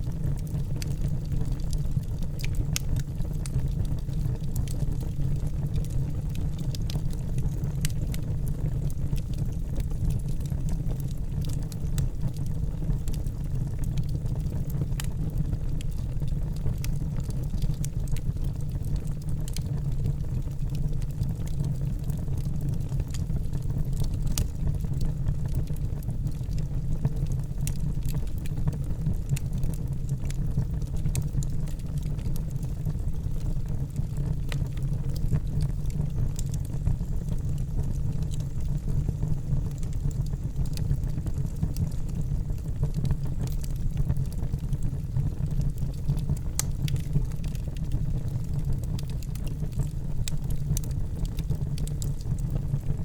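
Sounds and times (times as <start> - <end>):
burning wood crackling: 0.0 - 53.0
flames rushing in fireplace: 2.4 - 5.1, 34.1 - 49.8, 50.5 - 52.6.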